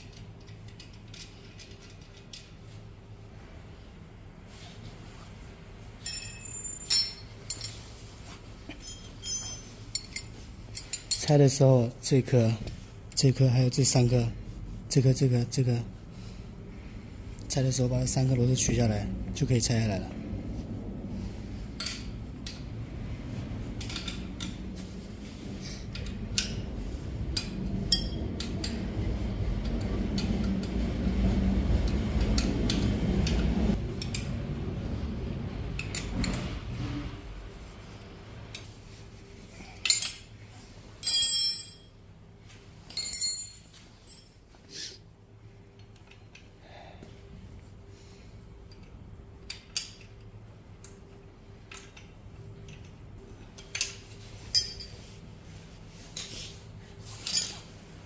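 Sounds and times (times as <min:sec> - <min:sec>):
loud ringing metallic clinks: 0:06.0 - 0:07.7, 0:08.8 - 0:10.2, 0:41.0 - 0:41.9, 0:43.0 - 0:44.3
metal tools clinking: 0:06.0 - 0:07.8, 0:08.7 - 0:11.4, 0:39.7 - 0:40.3, 0:41.0 - 0:42.0, 0:42.9 - 0:44.4, 0:53.6 - 0:55.1, 0:57.1 - 0:57.7
low rumbling handling noise: 0:15.9 - 0:41.3.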